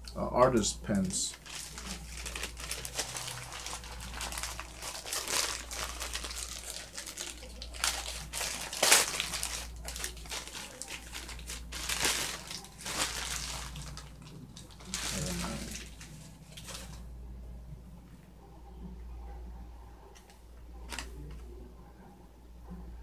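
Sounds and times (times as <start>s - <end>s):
plastic packaging crinkling: 0.9s - 17.1s, 20.2s - 21.4s.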